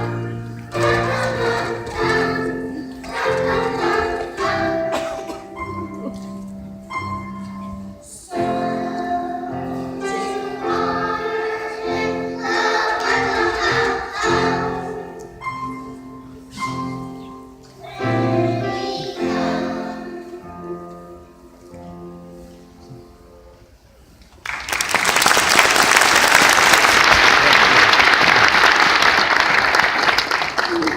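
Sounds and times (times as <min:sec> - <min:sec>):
choir singing: 0:00.0 - 0:05.7, 0:08.0 - 0:15.5, 0:17.8 - 0:20.8.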